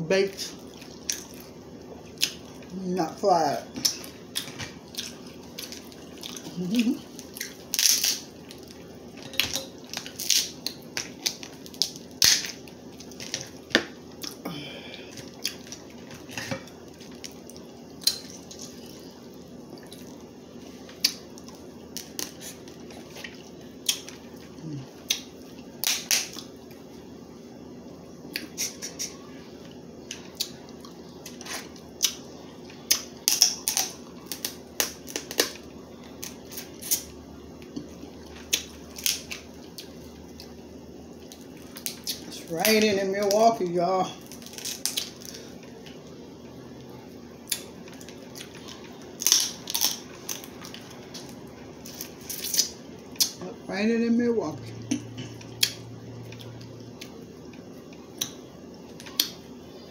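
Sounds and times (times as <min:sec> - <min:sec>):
crab shells cracking: 0:07.1 - 0:08.8, 0:09.4 - 0:14.4, 0:32.8 - 0:35.6, 0:44.2 - 0:45.4, 0:47.5 - 0:53.4.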